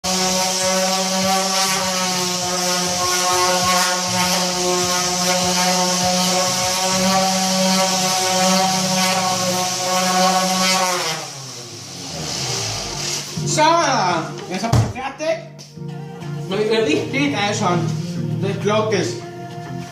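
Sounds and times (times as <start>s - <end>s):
power sander motor: 0.0s - 13.4s
sanding hiss on wood: 0.0s - 13.5s.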